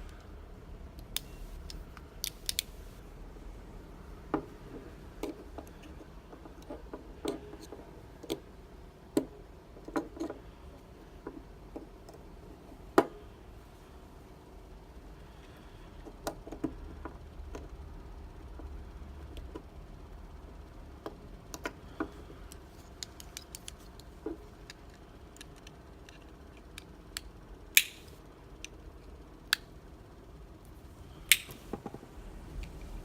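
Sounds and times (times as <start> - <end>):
sharp metal clicks: 24.7 - 28.8, 31.3 - 31.6.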